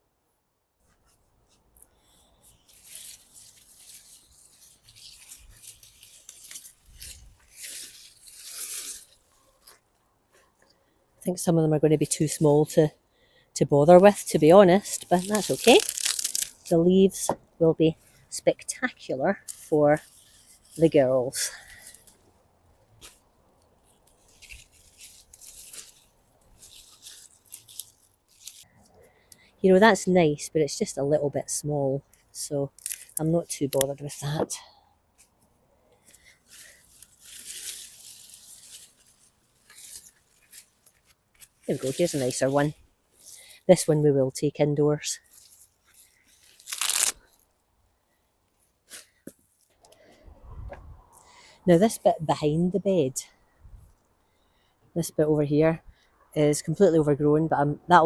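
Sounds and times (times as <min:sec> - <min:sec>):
soil scraping: 0:00.9 - 0:11.4, 0:13.7 - 0:28.9, 0:35.2 - 0:44.3, 0:45.1 - 0:47.5
leaves rustling and tearing: 0:01.1 - 0:10.6, 0:13.9 - 0:28.9, 0:32.0 - 0:34.5, 0:35.2 - 0:44.1, 0:45.0 - 0:47.6.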